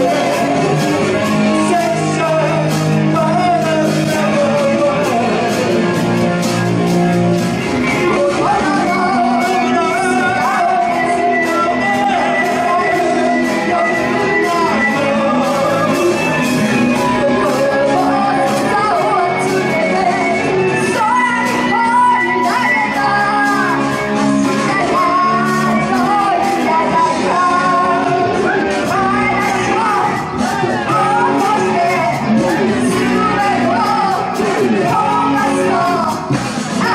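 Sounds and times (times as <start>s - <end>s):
lead vocal singing: 0.0s - 36.9s
rock band playing live: 0.0s - 36.9s.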